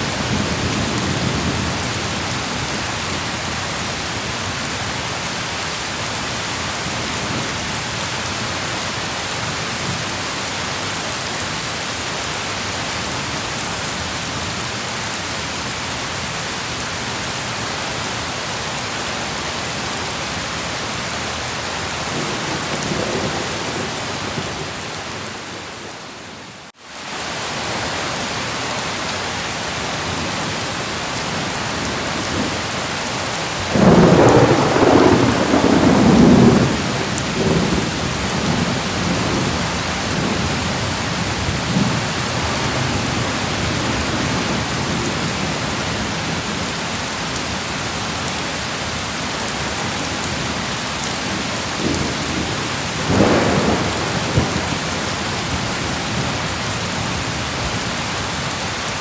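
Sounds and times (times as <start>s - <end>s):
heavy rain: 0.0s - 59.0s
thunder rumbling: 21.9s - 26.4s, 33.6s - 40.6s, 51.2s - 57.1s.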